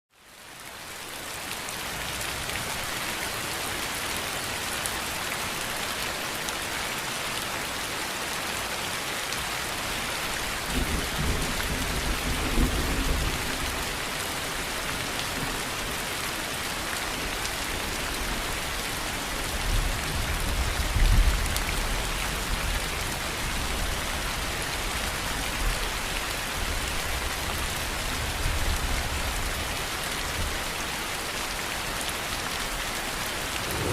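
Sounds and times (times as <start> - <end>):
heavy rain falling: 0.2 - 33.9
thunder rumbling: 33.5 - 33.9.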